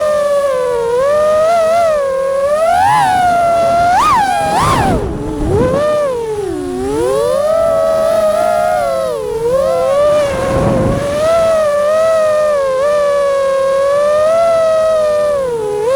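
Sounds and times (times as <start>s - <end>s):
quadcopter motors whining: 0.0s - 15.9s
propeller rushing sound: 2.4s - 12.4s.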